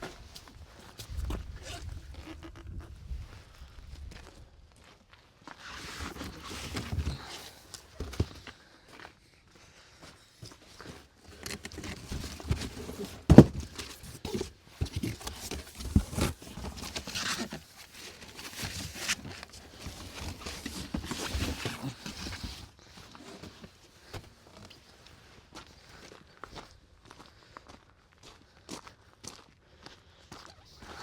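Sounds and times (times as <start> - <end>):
thuds and knocks: 12.4 - 14.2.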